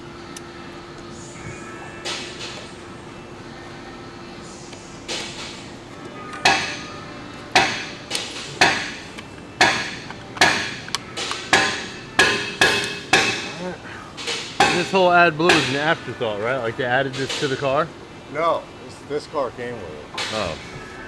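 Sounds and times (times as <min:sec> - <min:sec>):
sharp ringing knocks: 0:06.4 - 0:07.0, 0:07.6 - 0:16.2.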